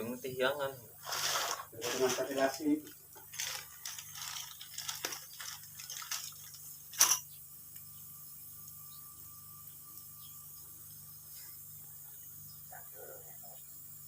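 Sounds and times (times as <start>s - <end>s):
objects being handled: 1.0s - 7.3s.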